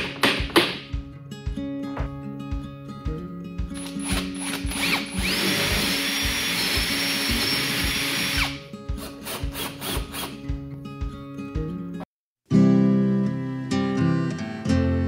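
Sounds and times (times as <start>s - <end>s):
background music: 0.0s - 15.0s
power drill drilling into wood: 3.8s - 10.3s.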